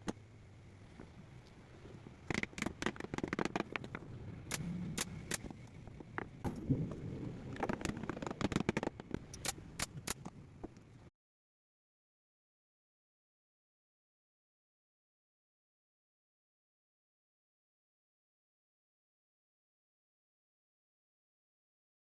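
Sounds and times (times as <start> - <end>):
hard objects clicking and knocking: 2.3 - 6.3, 7.6 - 10.3.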